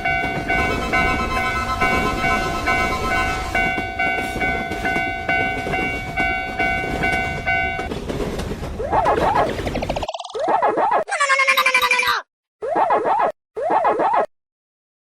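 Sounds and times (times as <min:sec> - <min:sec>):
wavering sliding tone: 0:00.0 - 0:04.2
level-crossing alarm ringing: 0:00.0 - 0:07.9
passing train rumble: 0:00.0 - 0:09.7.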